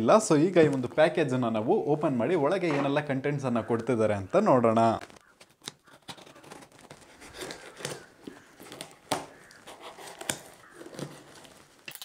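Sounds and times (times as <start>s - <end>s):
packaging tearing and crinkling: 4.8s - 12.0s.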